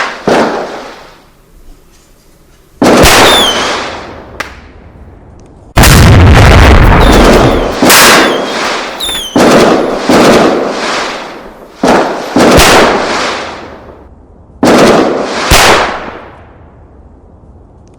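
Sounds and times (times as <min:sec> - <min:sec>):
fireworks bangs: 0:00.0 - 0:01.3, 0:02.8 - 0:05.0, 0:05.7 - 0:16.5
fireworks whistles: 0:02.8 - 0:04.1, 0:06.6 - 0:13.7.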